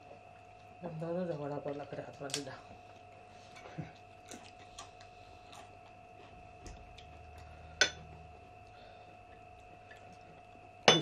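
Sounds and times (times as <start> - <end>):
faint steady tone: 2.8 - 11.0.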